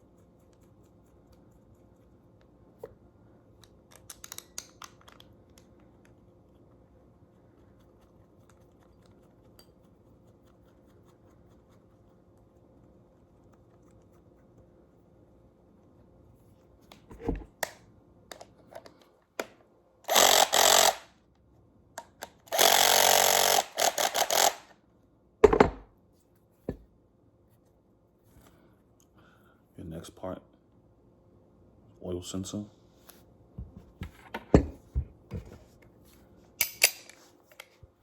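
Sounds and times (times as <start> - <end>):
handheld power tool running: 20.1 - 21.1, 22.5 - 24.7.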